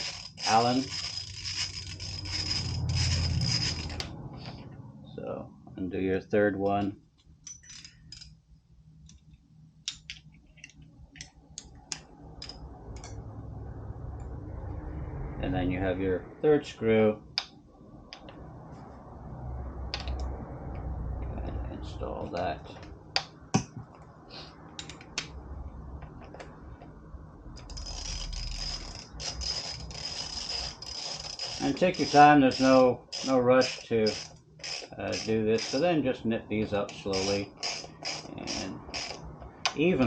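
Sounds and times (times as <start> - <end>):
tool whirring with high tone: 0.0 - 4.1, 27.6 - 36.0, 37.0 - 39.2
low background hum: 0.0 - 40.0.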